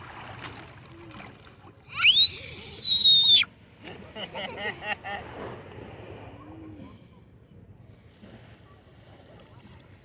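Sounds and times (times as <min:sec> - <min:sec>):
loud high whistle: 0:02.0 - 0:03.5.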